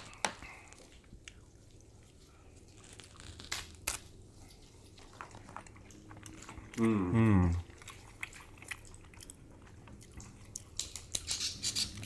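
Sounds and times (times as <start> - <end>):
crab legs cracked and bitten: 10.2 - 12.0.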